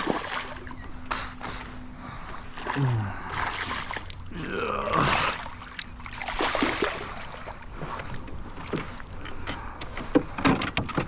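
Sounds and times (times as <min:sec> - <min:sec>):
water lapping: 0:00.0 - 0:10.2
wind: 0:00.0 - 0:11.0
light clicks and knocks of gear: 0:08.0 - 0:11.0.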